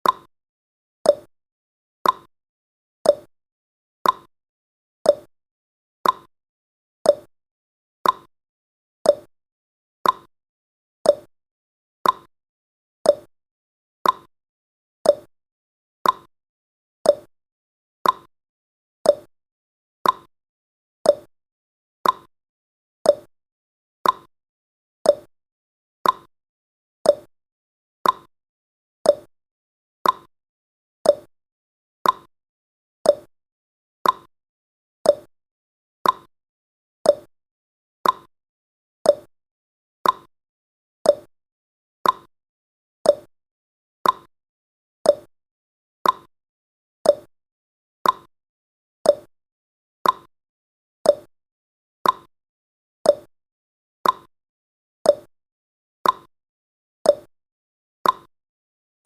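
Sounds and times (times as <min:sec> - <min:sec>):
timer ticking: 0:00.0 - 0:00.3, 0:01.1 - 0:01.3, 0:02.0 - 0:02.3, 0:03.1 - 0:03.3, 0:04.0 - 0:04.3, 0:05.1 - 0:05.3, 0:06.0 - 0:06.3, 0:07.1 - 0:07.3, 0:08.0 - 0:08.3, 0:09.1 - 0:09.3, 0:10.0 - 0:10.3, 0:11.1 - 0:11.3, 0:12.0 - 0:12.3, 0:13.1 - 0:13.3, 0:14.0 - 0:14.3, 0:15.1 - 0:15.3, 0:16.0 - 0:16.3, 0:17.1 - 0:17.3, 0:18.0 - 0:18.3, 0:19.1 - 0:19.3, 0:20.0 - 0:20.3, 0:21.1 - 0:21.3, 0:22.0 - 0:22.3, 0:23.1 - 0:23.3, 0:24.0 - 0:24.3, 0:25.1 - 0:25.3, 0:26.0 - 0:26.3, 0:27.1 - 0:27.3, 0:28.0 - 0:28.3, 0:29.1 - 0:29.3, 0:30.0 - 0:30.3, 0:31.0 - 0:31.3, 0:32.0 - 0:32.3, 0:33.1 - 0:33.3, 0:34.0 - 0:34.3, 0:35.1 - 0:35.3, 0:36.0 - 0:36.3, 0:37.1 - 0:37.3, 0:38.0 - 0:38.3, 0:39.1 - 0:39.3, 0:40.0 - 0:40.3, 0:41.1 - 0:41.3, 0:42.0 - 0:42.3, 0:43.1 - 0:43.3, 0:44.0 - 0:44.3, 0:45.1 - 0:45.3, 0:46.0 - 0:46.3, 0:47.1 - 0:47.3, 0:48.0 - 0:48.3, 0:49.1 - 0:49.3, 0:50.0 - 0:50.3, 0:51.1 - 0:51.3, 0:52.0 - 0:52.3, 0:53.1 - 0:53.3, 0:54.0 - 0:54.3, 0:55.1 - 0:55.3, 0:56.0 - 0:56.3, 0:57.1 - 0:57.3, 0:58.0 - 0:58.3.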